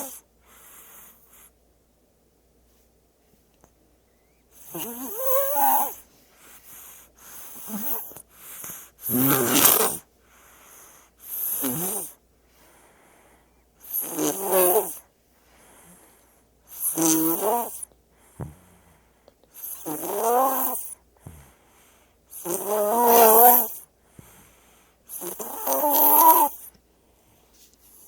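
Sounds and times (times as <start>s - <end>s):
baby snoring: 0.0s - 1.5s, 4.6s - 10.1s, 10.7s - 12.2s, 13.8s - 15.0s, 15.8s - 18.7s, 19.6s - 21.6s, 22.3s - 23.8s, 25.1s - 26.7s
quiet breaths: 0.0s - 22.6s, 23.2s - 28.0s.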